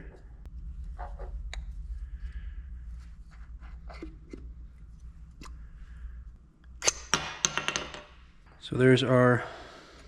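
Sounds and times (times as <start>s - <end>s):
low steady hum: 0.0s - 7.1s.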